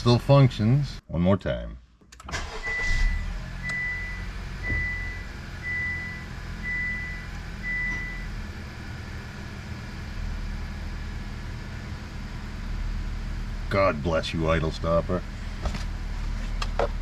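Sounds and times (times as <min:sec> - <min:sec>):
car warning chime beeping: 0:02.3 - 0:08.4
car engine running: 0:02.3 - 0:17.0.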